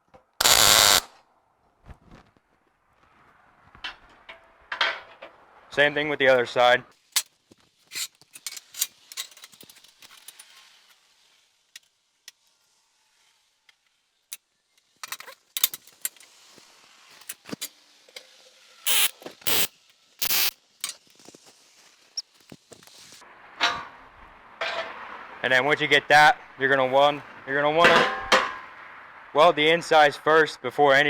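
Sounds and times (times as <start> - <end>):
tack welding bursts: 0.4 - 1.1, 18.9 - 20.6
steel parts clinking and knocking: 7.9 - 10.6, 27.8 - 28.6.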